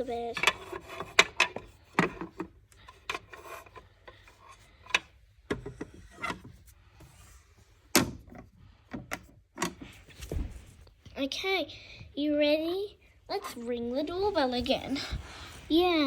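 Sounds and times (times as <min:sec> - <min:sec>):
rubbing and scraping: 0:00.0 - 0:07.9.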